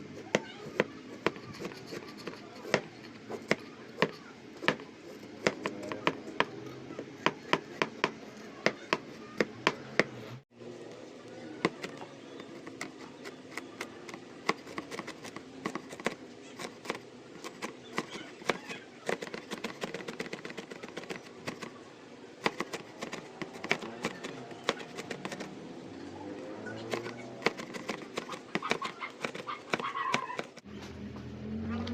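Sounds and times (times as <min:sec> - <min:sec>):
knife chopping on cutting board: 0:00.3 - 0:10.1, 0:12.7 - 0:21.7, 0:22.4 - 0:25.5.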